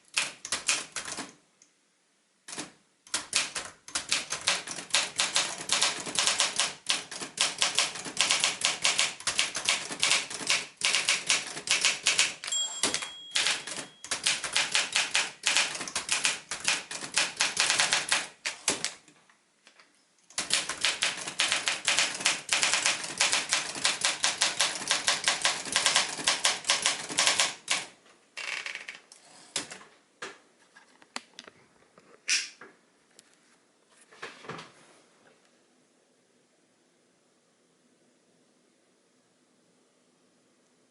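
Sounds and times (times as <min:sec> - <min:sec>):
typewriter key strikes: 0:02.5 - 0:19.0
typewriter bell ringing: 0:12.4 - 0:14.4.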